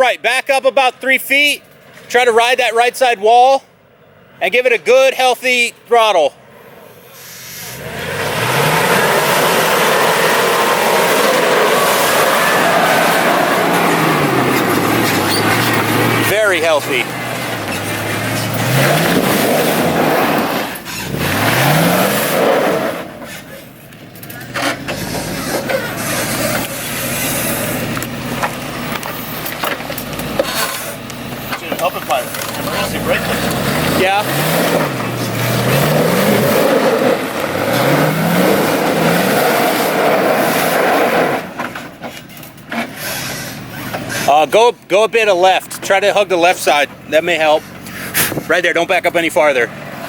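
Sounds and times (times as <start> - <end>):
loud rushing noise: 7.0 - 23.4
engine revving hard: 7.2 - 23.6, 24.5 - 28.1, 32.5 - 41.6.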